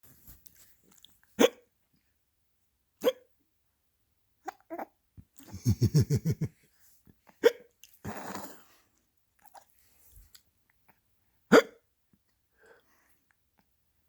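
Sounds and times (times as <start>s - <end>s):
loud hiccup: 1.4s - 1.7s, 3.0s - 3.3s, 7.4s - 8.5s, 11.5s - 11.8s
person laughing: 5.4s - 6.6s.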